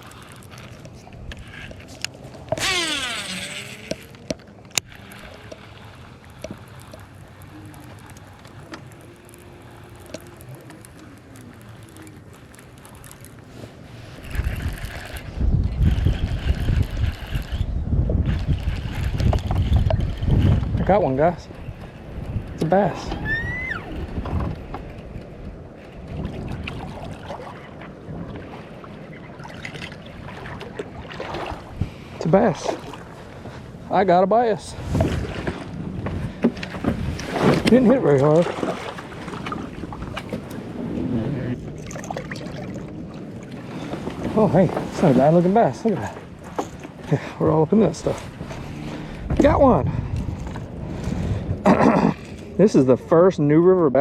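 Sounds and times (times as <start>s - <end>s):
fishing reel spool whirring: 0.0s - 42.0s.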